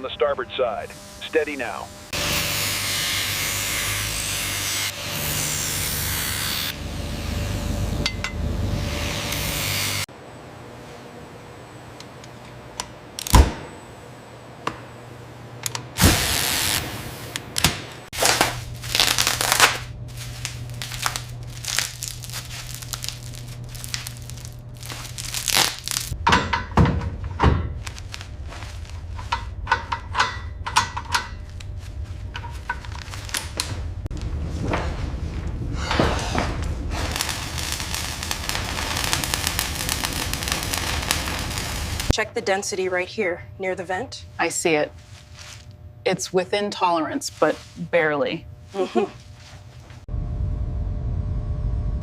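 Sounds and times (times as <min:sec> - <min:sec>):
low hum: 0:10.1 - 0:52.0
knocks and clicks: 0:29.0 - 0:33.7.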